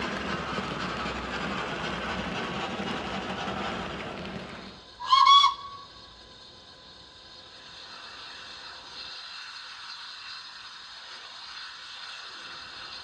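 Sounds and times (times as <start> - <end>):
steam whistle blast from small speaker: 5.0 - 6.0.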